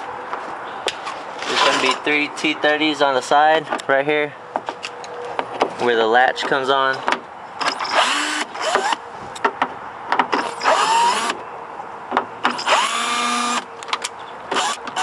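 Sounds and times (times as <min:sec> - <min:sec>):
cordless drill motor whine: 0:07.9 - 0:09.0, 0:10.6 - 0:11.4, 0:12.6 - 0:13.6.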